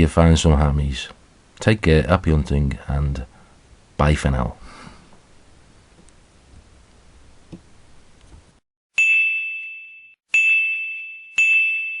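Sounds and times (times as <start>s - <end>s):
high bell-like chime: 9.0s - 12.0s.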